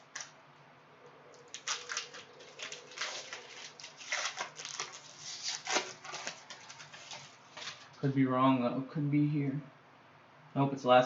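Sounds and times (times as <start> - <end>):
trading cards rustling and clicking: 1.4 - 7.9.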